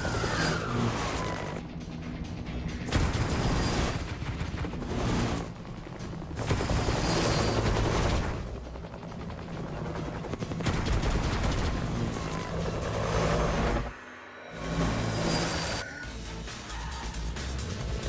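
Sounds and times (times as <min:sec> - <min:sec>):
rapid gunfire bursts: 0:10.0 - 0:12.1.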